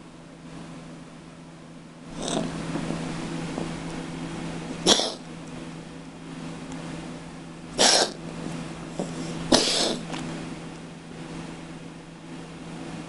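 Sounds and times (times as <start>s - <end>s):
low steady hum: 0.0s - 13.0s
cat hacking coughs: 4.8s - 5.2s, 7.8s - 8.2s, 9.0s - 10.1s.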